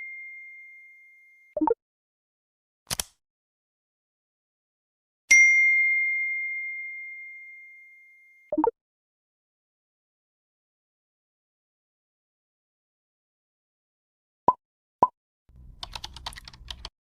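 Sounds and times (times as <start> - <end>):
bright single-tone ding: 5.3 - 8.5.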